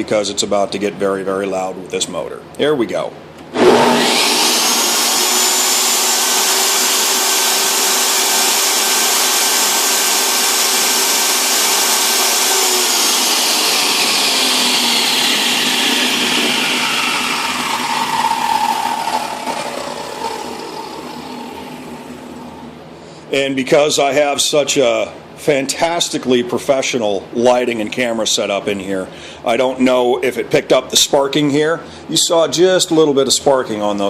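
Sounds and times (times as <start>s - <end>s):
table saw motor whining: 3.5s - 22.8s.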